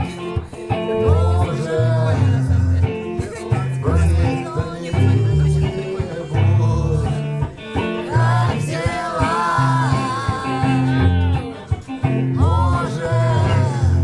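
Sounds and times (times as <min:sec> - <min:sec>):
live band playing: 0:00.0 - 0:14.0
man singing: 0:00.0 - 0:14.0.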